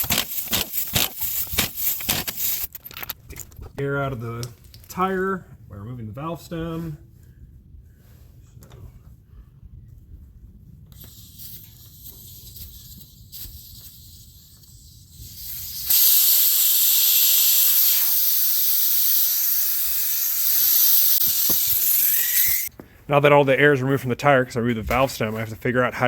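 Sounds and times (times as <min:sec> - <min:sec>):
air hissing out of a tire: 0:10.9 - 0:22.7.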